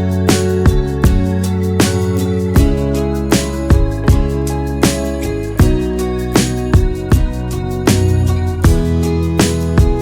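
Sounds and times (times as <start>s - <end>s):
plucked guitar music with beat: 0.0s - 10.0s.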